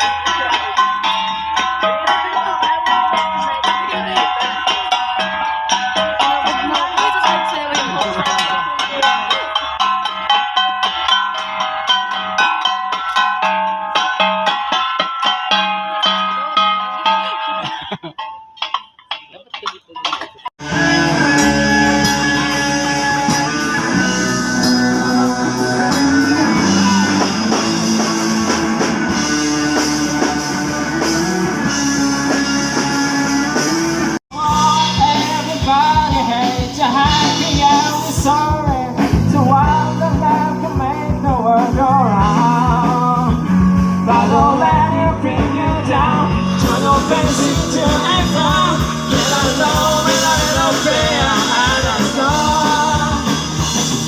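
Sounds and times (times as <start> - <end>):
instrumental music with held notes: 0.0 - 54.0
steady drum beat: 0.0 - 54.0
person singing: 20.6 - 33.1, 34.3 - 54.0.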